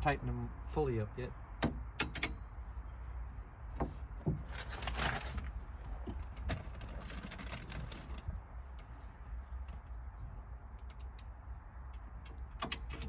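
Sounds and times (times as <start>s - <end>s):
rustling scrape: 4.4s - 5.8s, 6.5s - 8.3s.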